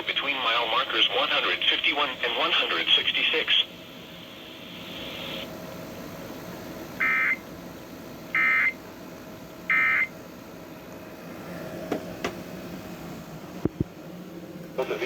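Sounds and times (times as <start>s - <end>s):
electronic data chirps: 7.0s - 7.4s, 9.7s - 10.1s.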